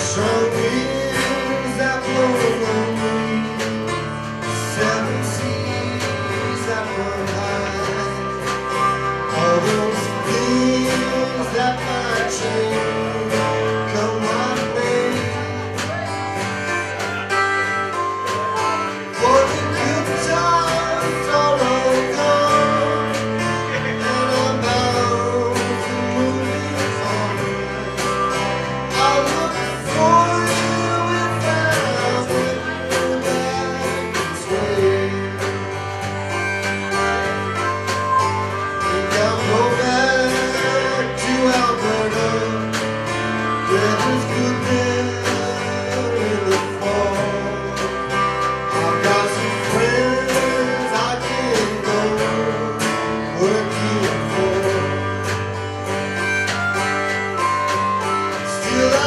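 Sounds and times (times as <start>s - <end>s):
strummed acoustic guitar: 0.0s - 59.0s
wavering melody line: 36.0s - 41.1s.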